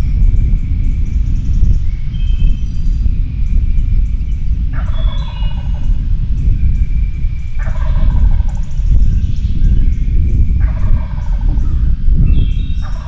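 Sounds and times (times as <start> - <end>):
loud low rumbling: 0.0 - 13.0
turkey gobbling: 4.8 - 5.8, 7.6 - 8.6, 10.6 - 11.5.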